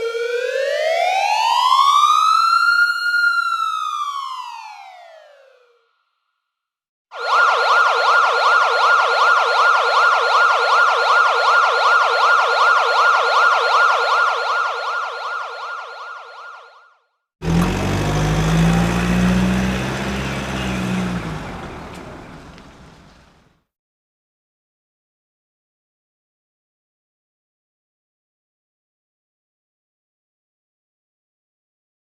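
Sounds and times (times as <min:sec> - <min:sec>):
siren warbling: 0:07.1 - 0:17.0
vehicle engine rumble with road noise: 0:17.4 - 0:23.6.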